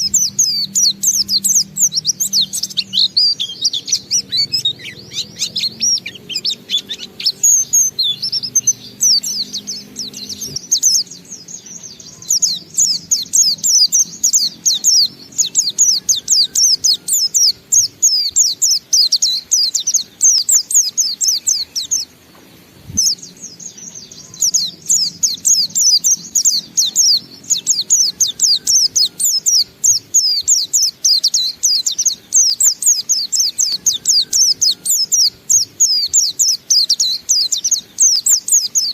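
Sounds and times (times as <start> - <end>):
bird twittering song: 0.0 - 38.9.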